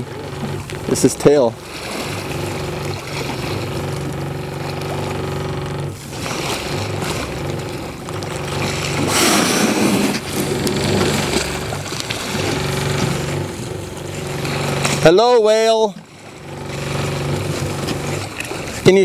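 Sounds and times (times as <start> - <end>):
boat engine idling: 0.0 - 19.0
loud whoosh: 8.4 - 15.1.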